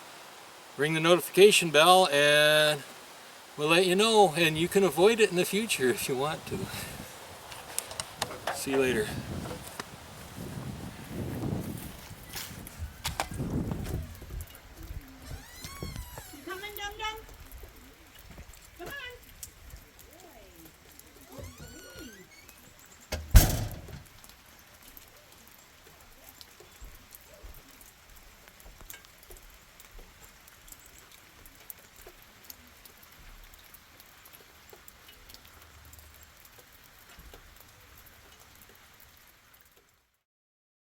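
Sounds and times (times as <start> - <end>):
faint ticks and pattering: 4.4 - 40.2
loud thump: 23.1 - 24.1.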